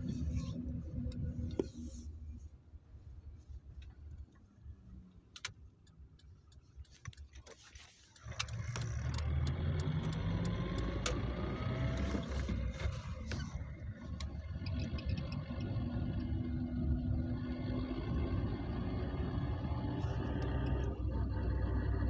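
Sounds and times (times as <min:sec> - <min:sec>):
car engine running inside cabin: 0:00.0 - 0:02.6, 0:08.2 - 0:22.0.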